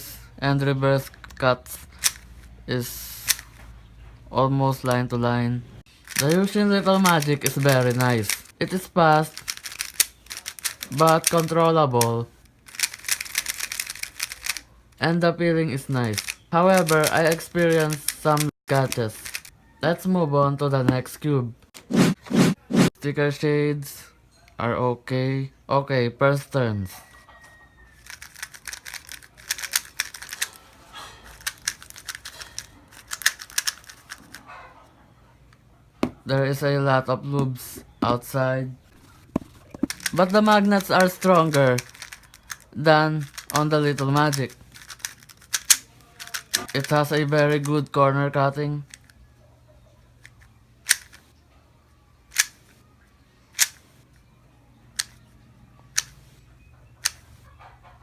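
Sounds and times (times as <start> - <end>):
puzzle cube clicking: 1.1 - 2.4, 3.2 - 3.6, 5.9 - 14.7, 16.0 - 19.5, 28.0 - 30.6, 31.3 - 34.4, 39.0 - 47.8, 50.2 - 51.2, 52.3 - 52.8, 53.5 - 53.8, 55.0 - 55.3, 55.9 - 56.2, 57.0 - 57.3.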